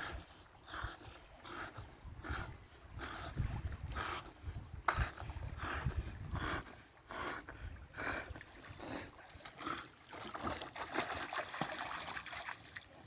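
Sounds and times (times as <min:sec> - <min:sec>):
dog paddling splashing water: 0:08.4 - 0:13.0.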